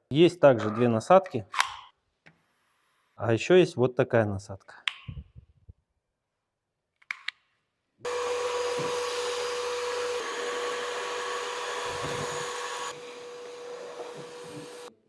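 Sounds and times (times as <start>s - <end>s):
vacuum cleaner motor whining: 8.1s - 15.0s.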